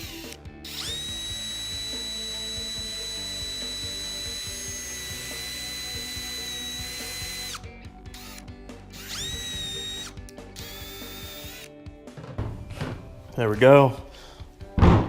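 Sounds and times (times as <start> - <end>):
power drill boring into antler: 0.0 - 11.7.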